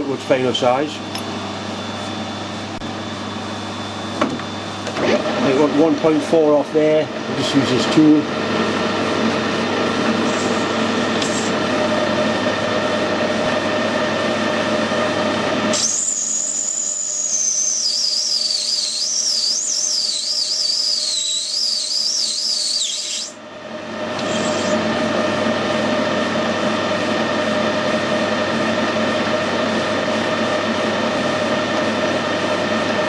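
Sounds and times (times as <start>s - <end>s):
high wavering whine: 0.0s - 28.9s
metal lathe running: 4.8s - 23.4s, 24.1s - 28.7s.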